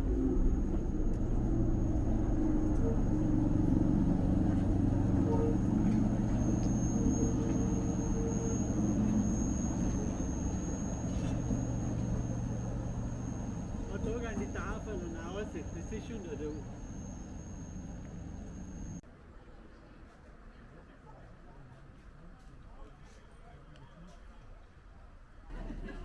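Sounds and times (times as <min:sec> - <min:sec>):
low hums: 0:00.0 - 0:19.0
thin high whine: 0:00.0 - 0:19.0
vehicle running rumble: 0:00.0 - 0:19.0.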